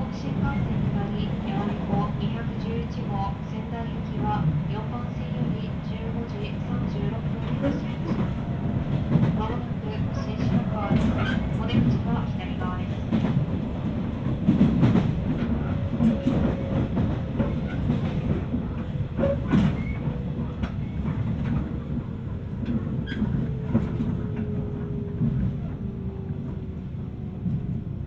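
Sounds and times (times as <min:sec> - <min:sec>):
train wheel and rail rumble: 0:00.0 - 0:28.0
rail-joint clacks: 0:04.1 - 0:25.7.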